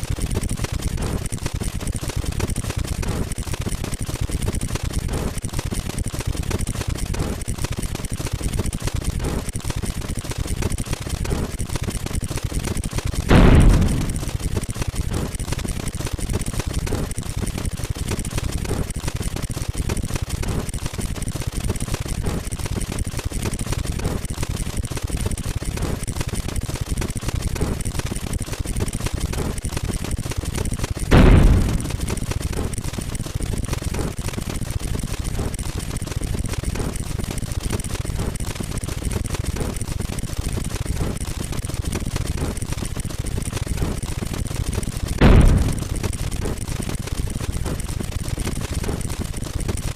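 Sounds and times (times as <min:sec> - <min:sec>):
deep burst: 0:13.3 - 0:14.6, 0:31.1 - 0:32.3, 0:45.2 - 0:46.2.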